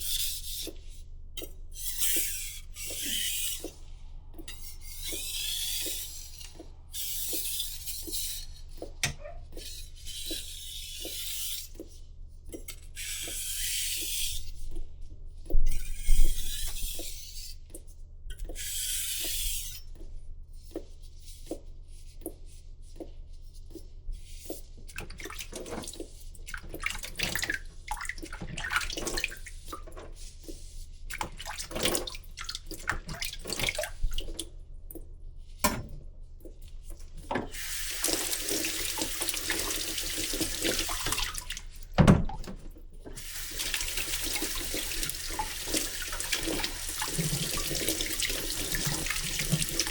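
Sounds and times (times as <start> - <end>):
tap running into sink: 37.3 - 49.9.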